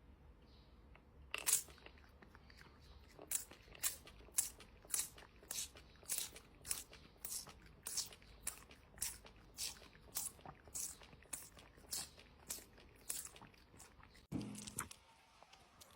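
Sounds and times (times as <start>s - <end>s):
crunchy chewing: 0.9s - 15.9s.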